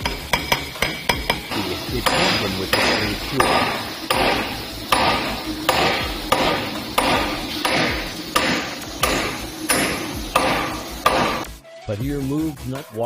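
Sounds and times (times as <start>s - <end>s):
hammer striking metal: 0.0s - 11.6s.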